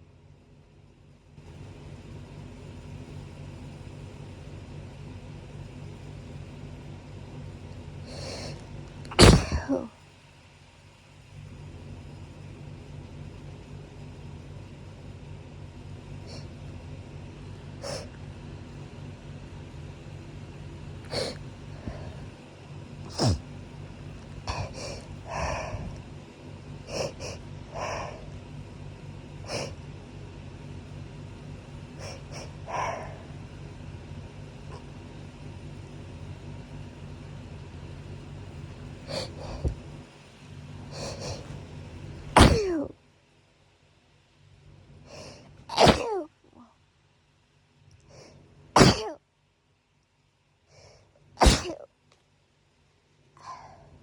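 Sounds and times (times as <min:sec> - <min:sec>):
steady low hum: 0:00.0 - 0:54.0
sniffs and breaths: 0:08.0 - 0:08.7, 0:21.1 - 0:22.4, 0:24.3 - 0:26.2, 0:26.8 - 0:28.4, 0:31.9 - 0:33.5, 0:39.0 - 0:39.9, 0:40.9 - 0:41.7, 0:45.0 - 0:45.6
person sneezing: 0:08.1 - 0:09.9, 0:23.1 - 0:23.5, 0:24.5 - 0:26.0, 0:26.9 - 0:28.2, 0:42.3 - 0:43.0, 0:45.2 - 0:46.3, 0:48.8 - 0:49.2, 0:51.4 - 0:51.9.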